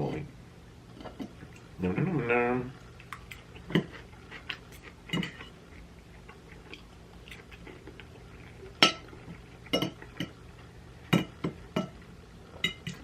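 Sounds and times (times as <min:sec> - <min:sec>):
quiet chewing: 0:02.8 - 0:13.0.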